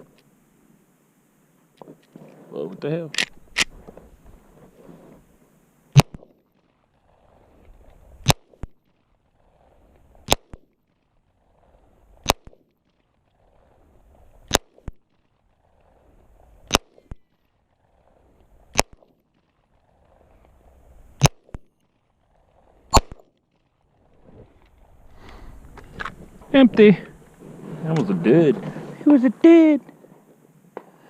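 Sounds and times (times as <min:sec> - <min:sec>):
pistol shots: 0:05.9 - 0:06.3, 0:23.0 - 0:23.2.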